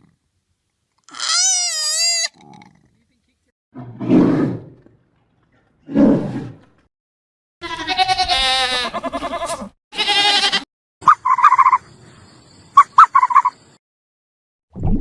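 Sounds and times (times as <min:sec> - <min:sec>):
goat or sheep bleating: 0:07.6 - 0:10.7
fowl calling: 0:08.8 - 0:11.8.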